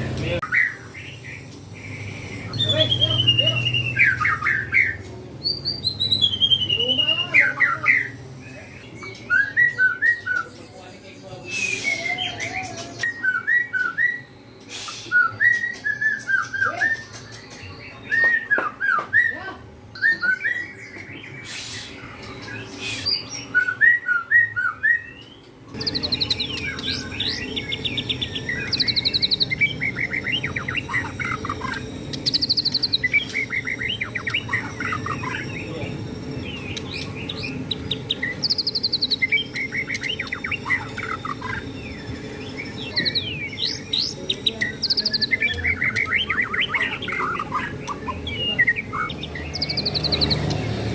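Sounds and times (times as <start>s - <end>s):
bird singing whistles and chirps: 1.9s - 8.2s, 8.8s - 10.6s, 11.4s - 50.9s
steady low hum: 25.2s - 50.9s.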